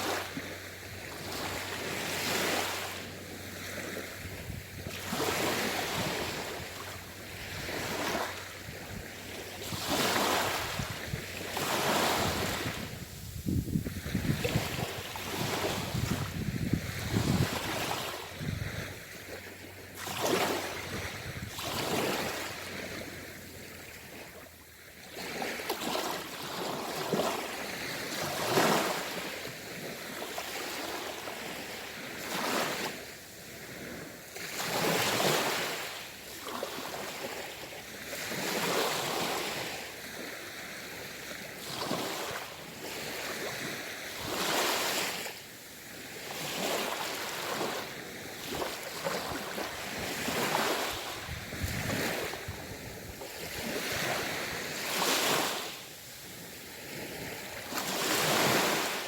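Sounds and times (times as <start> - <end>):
surf hiss: 0.0 - 21.6, 49.5 - 59.0
sea waves washing onto shore: 0.0 - 59.0.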